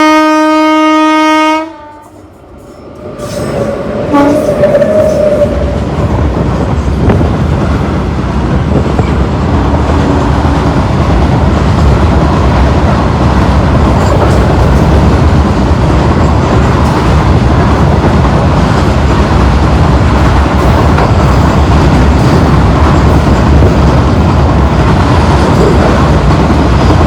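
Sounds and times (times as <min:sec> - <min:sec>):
train horn: 0:00.0 - 0:02.2, 0:04.0 - 0:05.7
freight train rumbling past: 0:00.0 - 0:27.0.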